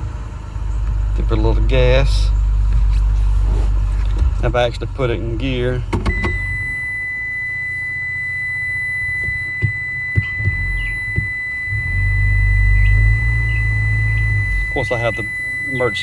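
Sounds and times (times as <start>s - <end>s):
truck engine idling: 0.0s - 16.0s
steady high-pitched tone: 6.2s - 16.0s.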